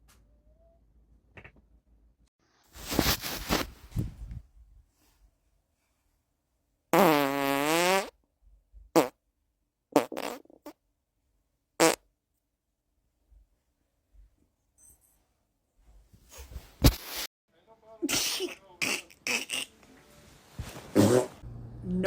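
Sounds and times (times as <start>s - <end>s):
farts: 7.0s - 8.2s, 9.0s - 9.2s, 9.9s - 10.8s, 11.8s - 12.0s, 20.9s - 21.4s.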